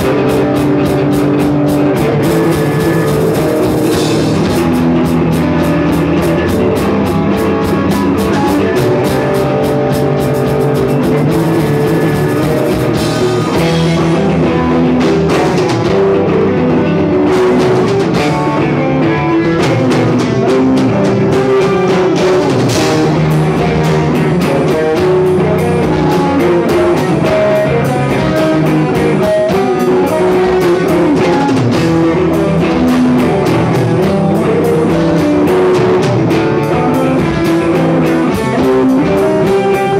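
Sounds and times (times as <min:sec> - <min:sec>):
drum kit: 0:00.0 - 0:39.9
electric guitar: 0:00.0 - 0:39.9.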